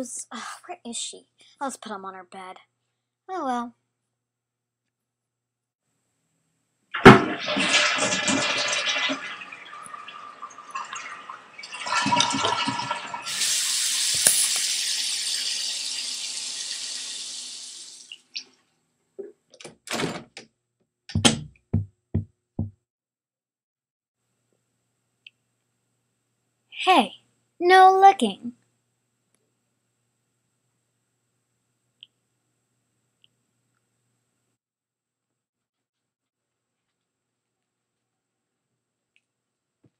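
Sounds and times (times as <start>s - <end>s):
toilet flushing: 7.0s - 18.2s
tap running into sink: 12.1s - 14.8s.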